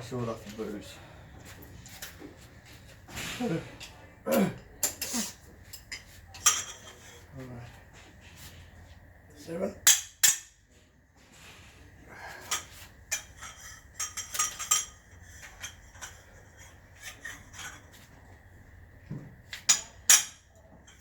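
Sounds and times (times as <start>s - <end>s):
metal tools clinking and scraping: 0.1s - 4.0s, 4.8s - 7.3s, 12.3s - 18.2s, 19.6s - 21.0s.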